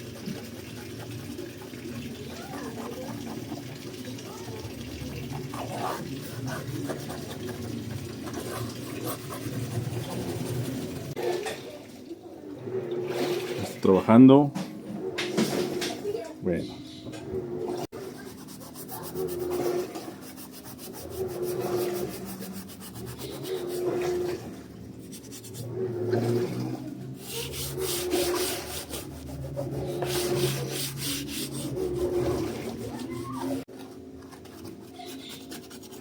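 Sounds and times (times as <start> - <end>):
scrubbing pad rubbing plastic: 0.0 - 4.3, 5.4 - 11.2, 17.9 - 36.0.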